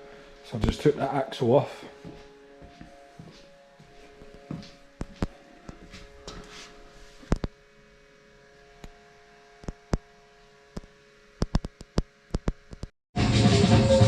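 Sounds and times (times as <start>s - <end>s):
faint steady hum: 0.0s - 12.9s
sharp clicks and knocks: 10.8s - 12.9s
loud electronic music: 13.2s - 14.0s.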